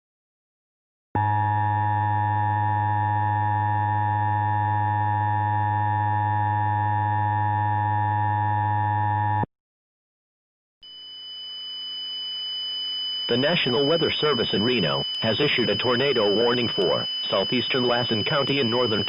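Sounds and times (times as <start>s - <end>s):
harsh two-tone alert signal: 13.2s - 19.0s.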